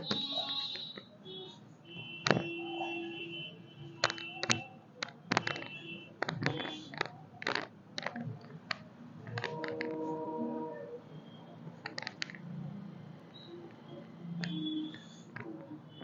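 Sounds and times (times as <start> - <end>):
joints cracking: 4.0 - 10.1, 11.8 - 12.6.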